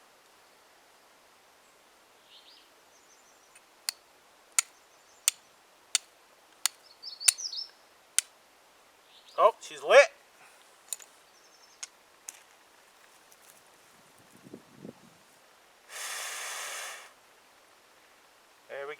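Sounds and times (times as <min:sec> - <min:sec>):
faint bird chirps: 0:06.8 - 0:07.9.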